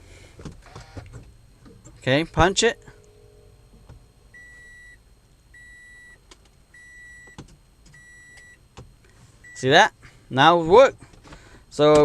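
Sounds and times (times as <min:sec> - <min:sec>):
car warning chime beeping: 0:02.0 - 0:08.8, 0:09.4 - 0:09.9.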